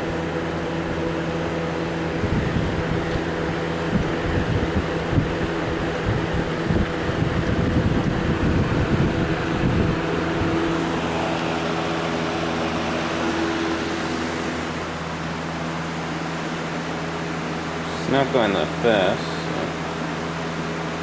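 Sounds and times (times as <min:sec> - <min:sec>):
air rushing from fan: 0:00.0 - 0:21.0
fan motor hum: 0:00.0 - 0:21.0
wind buffeting microphone: 0:02.1 - 0:12.9.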